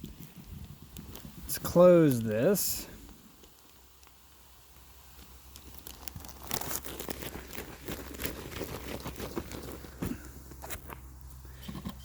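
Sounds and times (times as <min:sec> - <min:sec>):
plastic bag crinkling: 0:05.2 - 0:10.9.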